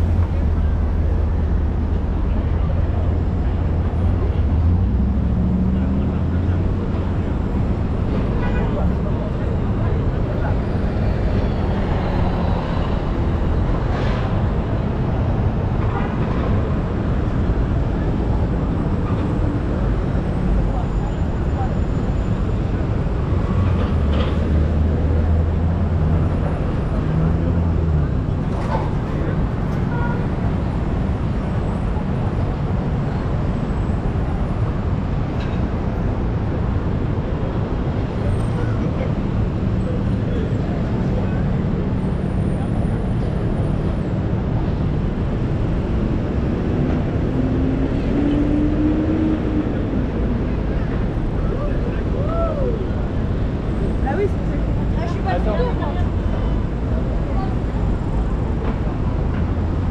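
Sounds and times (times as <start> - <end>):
heavy vehicle engine running: 0.0 - 8.4
busy city street noise: 0.0 - 59.9
traffic rumble: 0.0 - 59.9.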